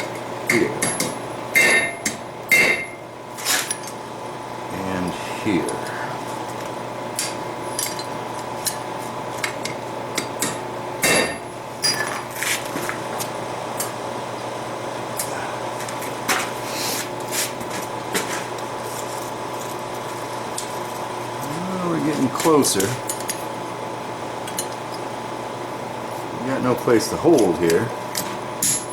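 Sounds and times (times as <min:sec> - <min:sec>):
steady hum: 0:00.0 - 0:28.9
ringing metal strikes: 0:00.8 - 0:03.0.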